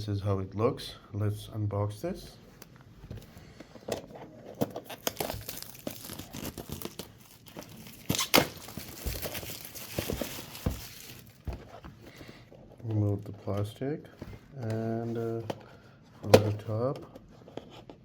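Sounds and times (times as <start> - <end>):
plastic wrapping tearing and crinkling: 4.8 - 11.5.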